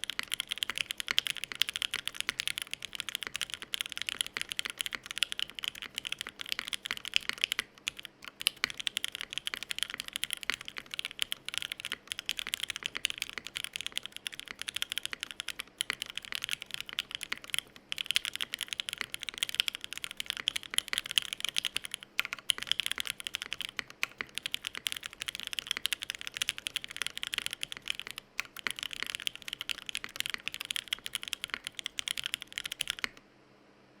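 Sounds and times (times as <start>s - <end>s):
typing on mechanical keyboard: 0.0s - 33.2s.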